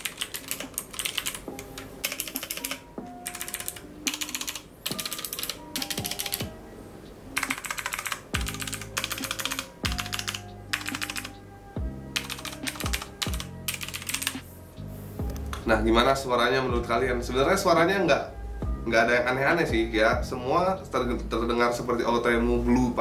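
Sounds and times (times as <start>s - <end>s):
mechanical keyboard typing clicks: 0.0s - 6.5s, 7.4s - 11.3s, 12.2s - 14.3s.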